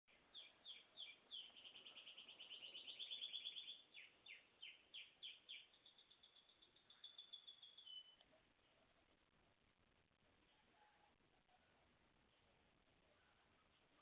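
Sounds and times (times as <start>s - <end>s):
canary singing: 0.1s - 8.3s.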